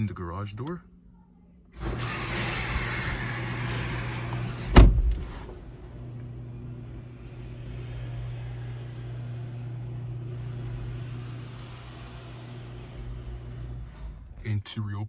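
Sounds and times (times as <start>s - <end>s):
garage door motor humming: 1.7s - 14.6s.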